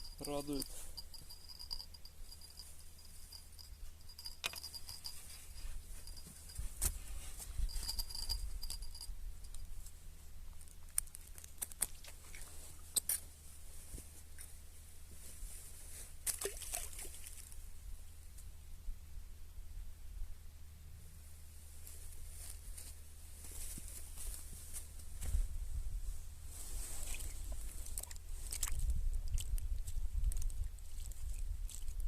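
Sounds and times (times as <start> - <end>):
insect high trill: 0.0 - 6.6
handling clicks and rustles: 0.0 - 10.0.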